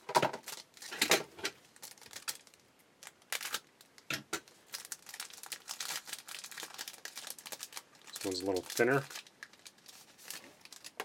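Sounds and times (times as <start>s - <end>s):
foil pack rustling: 1.7s - 3.6s, 4.7s - 11.0s.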